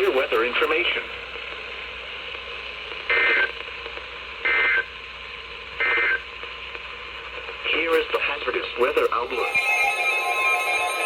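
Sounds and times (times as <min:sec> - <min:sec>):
steady radio hiss: 0:00.0 - 0:11.0
warbling digital tone bursts: 0:09.4 - 0:11.0.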